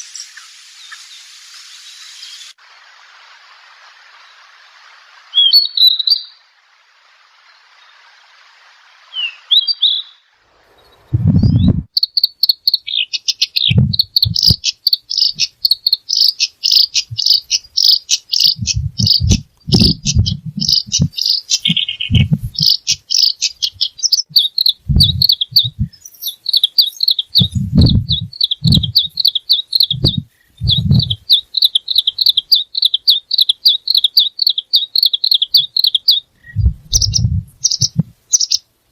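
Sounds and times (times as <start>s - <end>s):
songbird singing: 0.0s - 2.6s, 4.0s - 6.6s, 7.3s - 38.8s
steady hiss: 0.0s - 38.9s
bird chirps: 9.1s - 38.7s
dull low thumps: 11.1s - 11.9s, 13.7s - 14.6s, 18.6s - 22.8s, 24.8s - 26.0s, 27.4s - 29.1s, 29.8s - 31.2s, 36.5s - 38.2s.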